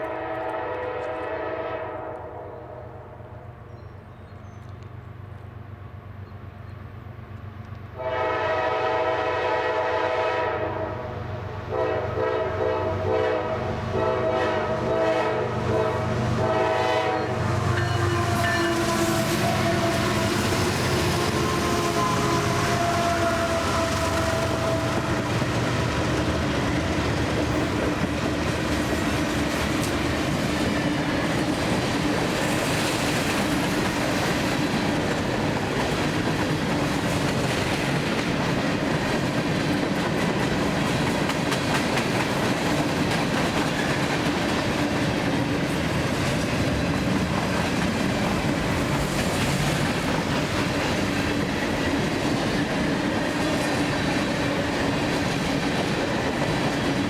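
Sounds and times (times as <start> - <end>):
train rumble: 0.0 - 57.0
train wheels clattering on rails: 17.6 - 57.0.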